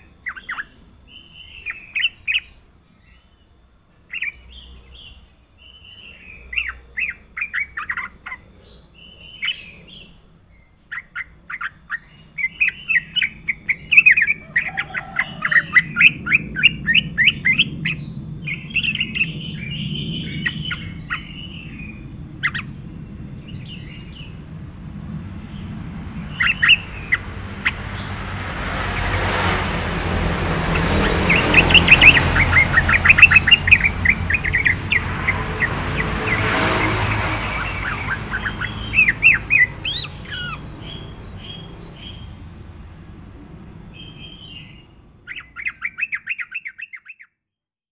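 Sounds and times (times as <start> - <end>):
bird chirping song: 0.0 - 47.4
broad rushing noise: 15.0 - 43.9.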